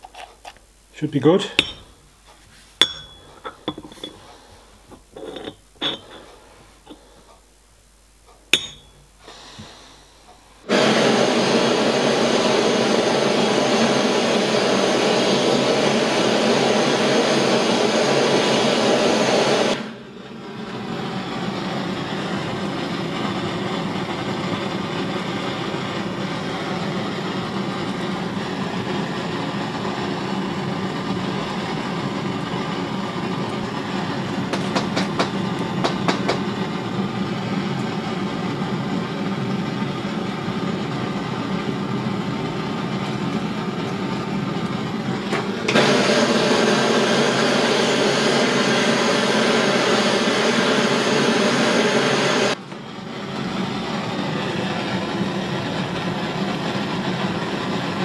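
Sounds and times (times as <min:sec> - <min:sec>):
gas torch flame hissing: 0:00.0 - 0:58.0.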